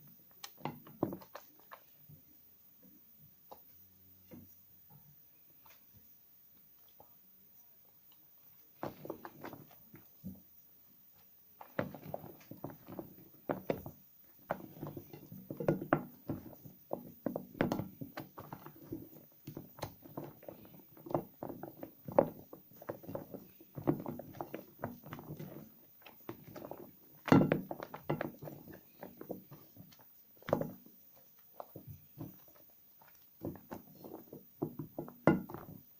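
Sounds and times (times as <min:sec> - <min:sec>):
wet soap squelching: 0:11.2 - 0:34.8.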